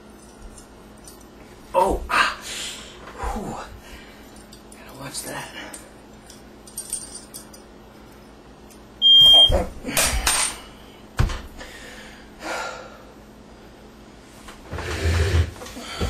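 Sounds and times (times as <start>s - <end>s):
smoke alarm beep: 9.0s - 9.6s.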